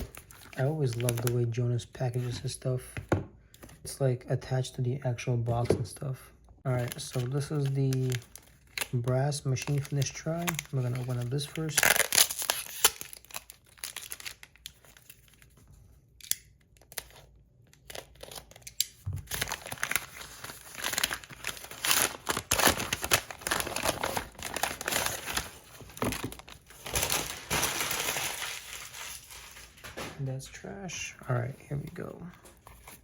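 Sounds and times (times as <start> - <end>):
wrapping crinkling and tearing: 0.0 - 1.5, 6.7 - 15.6, 16.6 - 30.0.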